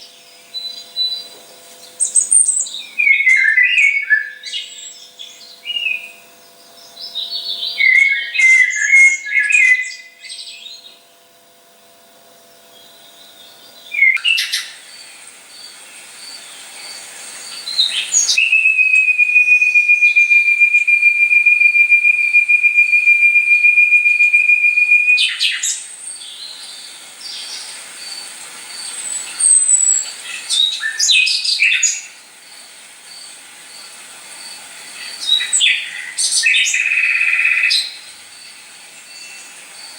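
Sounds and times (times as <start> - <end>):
high owl trill: 16.9 - 27.8.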